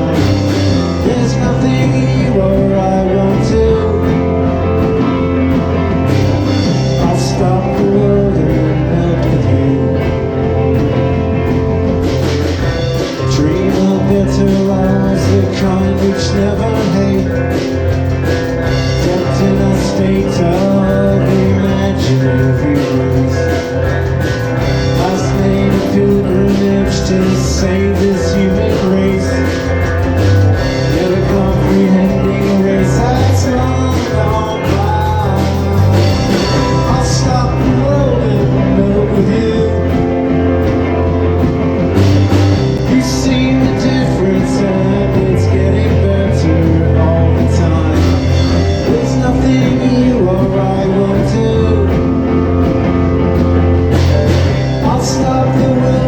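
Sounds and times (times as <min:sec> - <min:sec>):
bass guitar: 0:00.0 - 0:56.0
drums: 0:00.0 - 0:56.0
electric guitar: 0:00.0 - 0:56.0.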